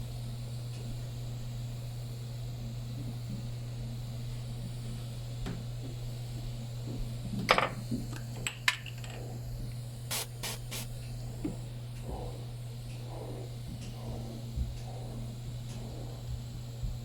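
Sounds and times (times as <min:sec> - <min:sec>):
steady low hum: 0:00.0 - 0:17.0
short hisses: 0:10.1 - 0:10.9.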